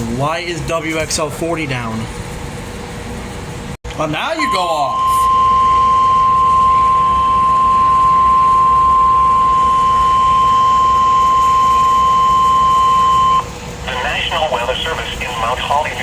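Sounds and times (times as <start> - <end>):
steady electronic alarm tone: 4.0 - 14.4.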